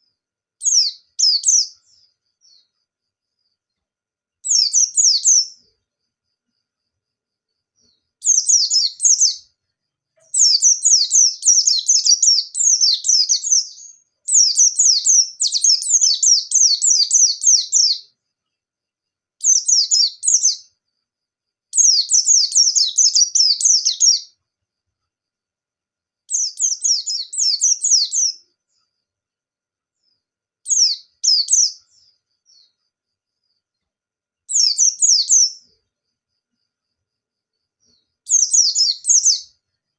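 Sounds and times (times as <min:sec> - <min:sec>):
bird high-pitched twittering: 0:00.6 - 0:02.8, 0:04.4 - 0:05.7, 0:07.8 - 0:09.6, 0:10.2 - 0:18.2, 0:19.4 - 0:20.8, 0:21.7 - 0:24.4, 0:26.3 - 0:28.8, 0:30.0 - 0:32.8, 0:34.5 - 0:35.8, 0:37.8 - 0:39.6.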